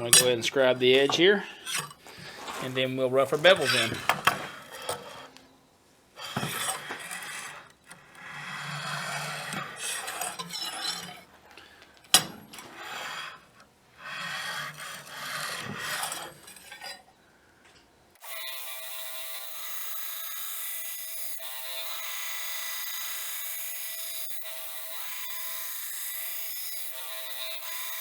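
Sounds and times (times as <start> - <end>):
metal scribe scraping steel: 0.0 - 5.4, 6.2 - 17.2.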